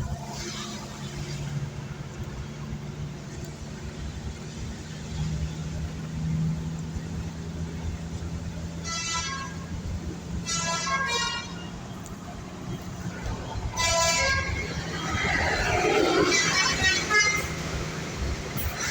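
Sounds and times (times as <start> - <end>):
musical multi-tone bus horn: 0.0 - 2.1, 8.5 - 18.9
bus engine humming: 0.0 - 18.9.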